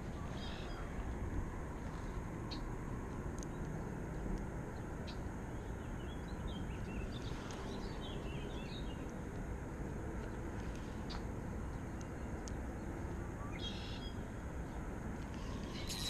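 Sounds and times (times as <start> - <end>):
low outdoor rumble: 0.0 - 16.0
bird chirping: 0.3 - 0.9, 5.0 - 9.1, 13.4 - 14.8, 15.4 - 16.0.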